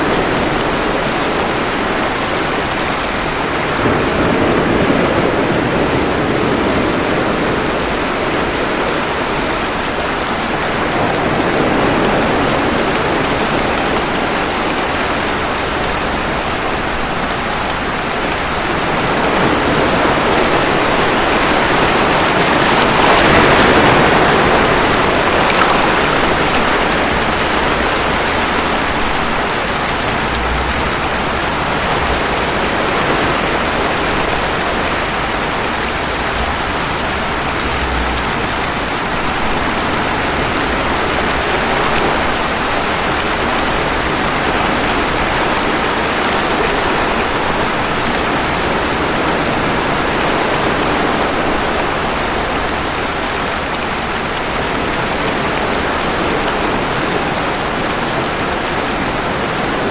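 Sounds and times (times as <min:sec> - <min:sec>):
ocean waves washing ashore: 0:00.0 - 0:59.9
steady rain falling: 0:00.0 - 0:59.9.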